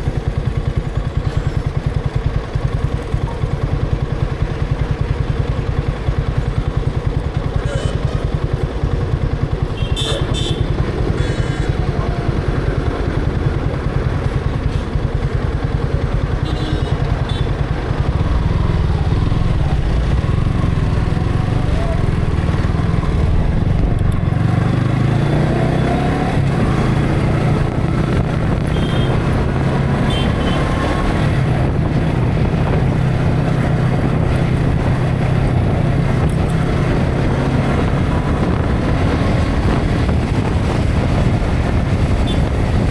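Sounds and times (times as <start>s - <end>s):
motorcycle engine running: 0.0s - 42.9s
wind noise: 17.8s - 42.9s.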